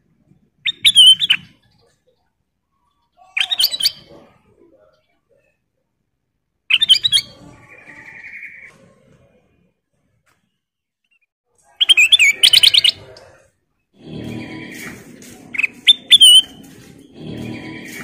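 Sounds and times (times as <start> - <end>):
bulbul singing warbling whistles: 0.6 - 1.6, 3.3 - 4.1, 6.7 - 7.4, 15.6 - 16.6
buzzy harsh bird note: 14.0 - 18.0.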